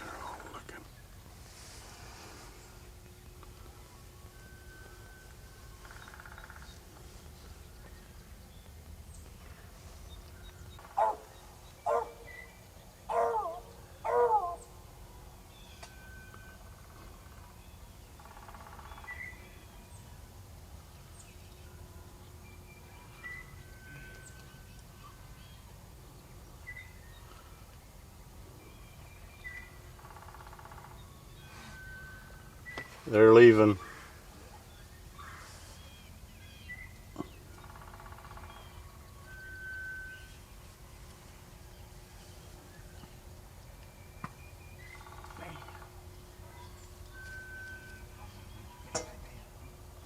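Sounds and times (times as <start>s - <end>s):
faint bird calls: 0.0s - 14.9s, 22.8s - 25.8s, 28.6s - 40.6s, 44.1s - 49.8s
outdoor background noise: 0.0s - 50.0s
wild turkey calling: 4.7s - 6.8s, 36.5s - 40.3s.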